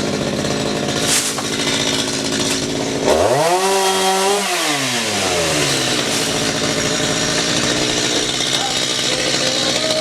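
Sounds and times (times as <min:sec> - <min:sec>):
chainsaw engine revving: 0:00.0 - 0:10.0
steady machine noise: 0:05.6 - 0:10.0.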